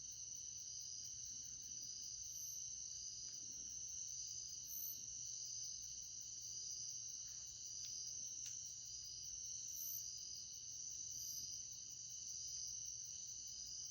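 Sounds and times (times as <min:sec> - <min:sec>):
high-pitched insect chorus: 0:00.0 - 0:13.9
faint ticks: 0:07.2 - 0:08.8.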